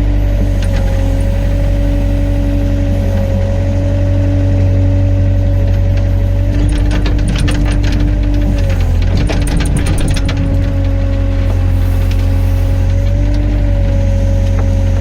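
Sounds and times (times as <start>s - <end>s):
diesel engine running: 0.0s - 15.0s
steady whine: 0.0s - 15.0s
rattling metallic clanks: 5.7s - 12.3s.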